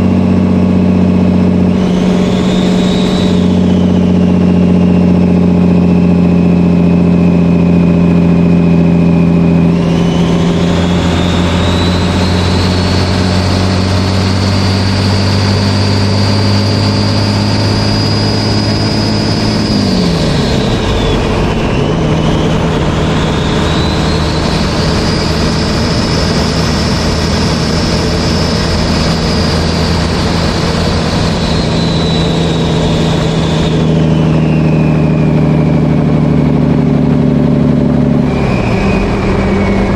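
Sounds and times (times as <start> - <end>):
diesel engine running: 0.0 - 39.9
turbocharger whistle: 0.0 - 39.9.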